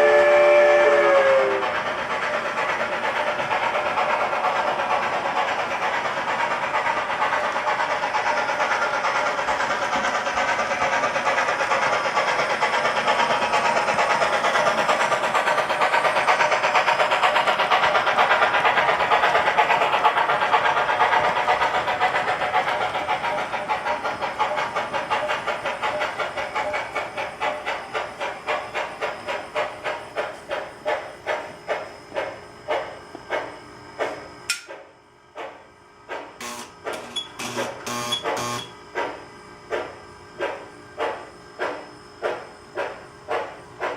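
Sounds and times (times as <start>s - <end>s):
model train rhythmic hissing: 0.0s - 33.6s.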